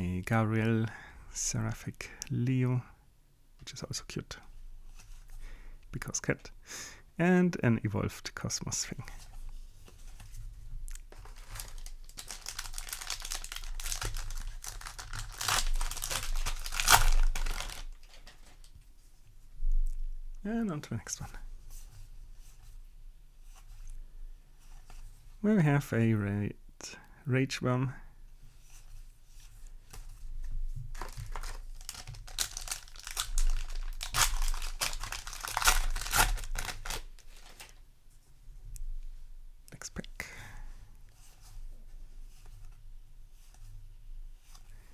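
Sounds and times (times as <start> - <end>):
foil wrapper crinkling: 11.0 - 18.7, 30.9 - 37.8.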